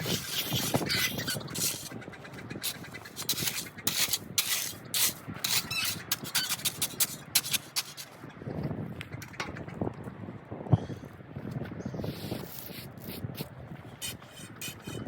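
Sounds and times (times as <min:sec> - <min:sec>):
short scrapes or crunches: 0:00.0 - 0:01.9, 0:02.6 - 0:08.2.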